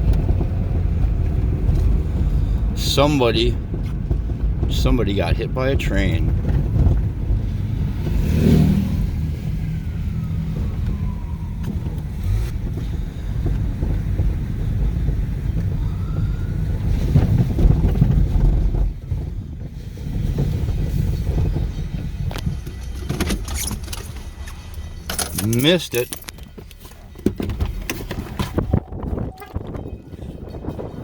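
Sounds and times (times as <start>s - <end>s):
wind buffeting microphone: 0.0s - 23.4s, 26.6s - 31.0s.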